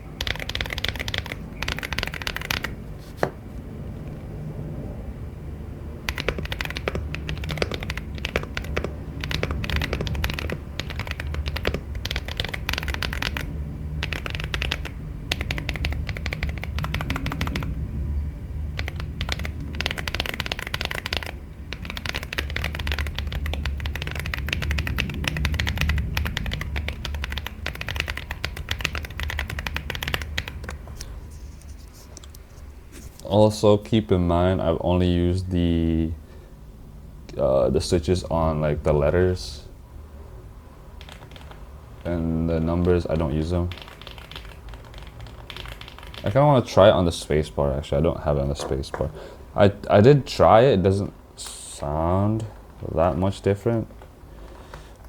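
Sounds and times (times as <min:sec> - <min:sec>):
fast typing on mechanical keyboard: 0:00.0 - 0:02.8, 0:06.0 - 0:17.8, 0:18.8 - 0:31.1, 0:41.0 - 0:46.5
steady low hum: 0:00.0 - 0:55.0.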